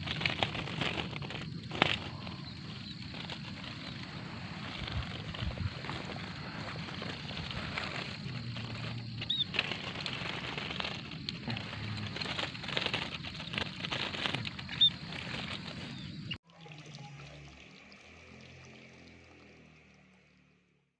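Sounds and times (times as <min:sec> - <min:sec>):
small birds fluttering and scrabbling: 0:00.0 - 0:20.2.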